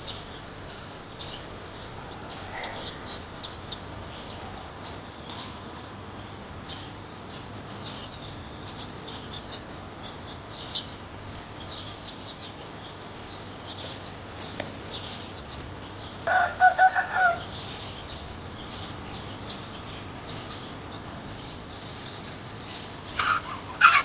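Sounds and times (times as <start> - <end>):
chicks peeping: 1.2 - 5.4.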